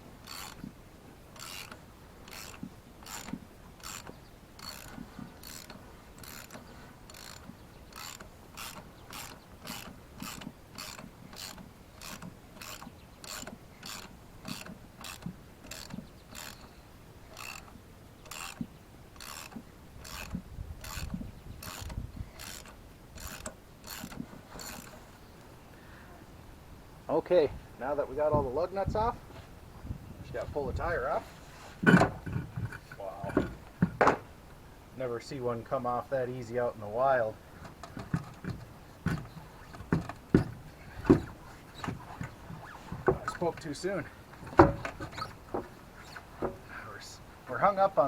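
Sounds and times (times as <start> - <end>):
ratchet wrench clicking: 1.4 - 7.4
dull knocks: 31.8 - 34.3, 37.6 - 43.4, 44.4 - 45.8.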